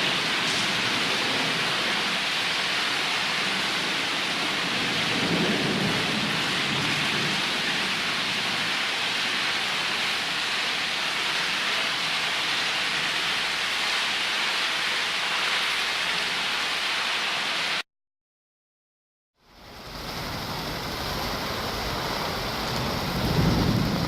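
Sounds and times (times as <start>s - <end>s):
heavy rain falling: 0.0s - 17.8s, 19.4s - 24.0s.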